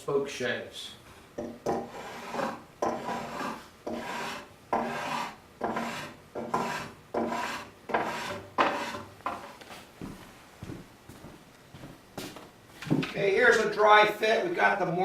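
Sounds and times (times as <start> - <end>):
spokeshave cutting wood: 1.7 - 9.6.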